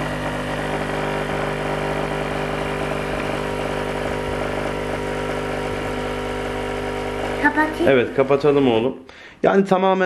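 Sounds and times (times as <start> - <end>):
coffee machine pump humming: 0.0 - 8.9.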